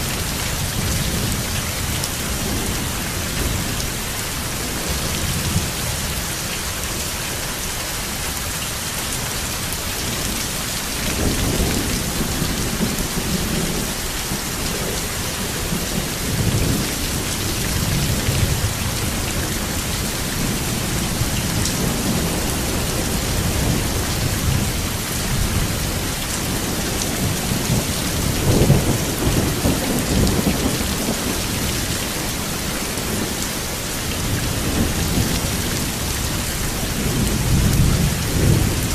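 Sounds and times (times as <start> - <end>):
heavy rain hissing: 0.0 - 38.9
thunder rumbling: 11.0 - 38.9.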